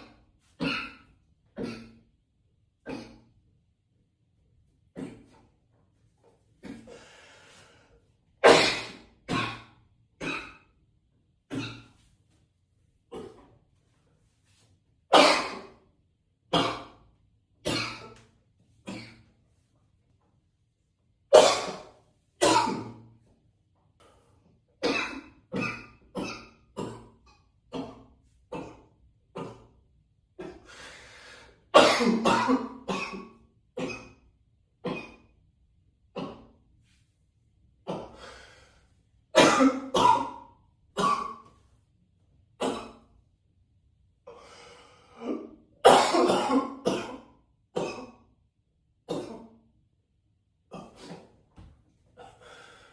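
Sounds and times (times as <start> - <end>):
throat clearing: 0.0 - 2.0, 2.8 - 3.3, 5.0 - 5.5, 6.6 - 7.1, 8.5 - 10.7, 11.5 - 12.1, 13.1 - 13.6, 16.6 - 17.0, 17.7 - 18.2, 18.8 - 19.3, 21.4 - 23.1, 24.8 - 29.7, 30.4 - 30.8, 31.8 - 34.2, 34.8 - 35.3, 36.1 - 36.6, 37.8 - 38.4, 39.4 - 40.4, 42.6 - 43.0, 45.1 - 48.2, 49.1 - 49.6, 50.7 - 52.6
man coughing echoey: 31.8 - 33.2, 39.4 - 40.4, 45.9 - 47.2.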